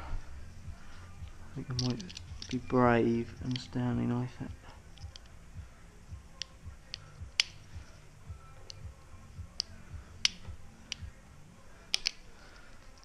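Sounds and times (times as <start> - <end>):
utility knife clicks: 4.9 - 5.3, 6.3 - 7.7, 9.5 - 11.0, 11.9 - 12.2.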